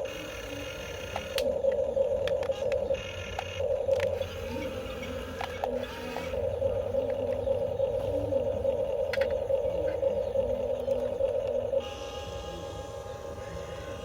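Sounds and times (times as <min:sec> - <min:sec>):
small electric motors whining: 0:00.0 - 0:14.0
small clicks and scrapes: 0:01.1 - 0:04.3, 0:05.0 - 0:06.4, 0:09.1 - 0:09.4.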